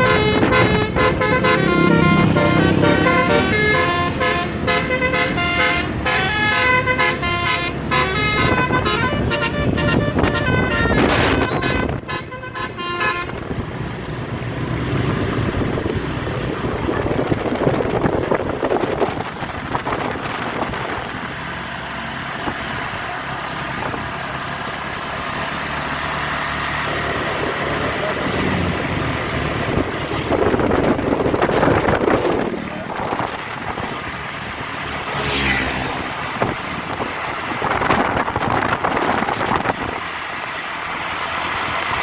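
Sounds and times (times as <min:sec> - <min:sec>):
musical air horn: 0:00.0 - 0:13.5
vehicle engine and road noise: 0:00.0 - 0:42.0.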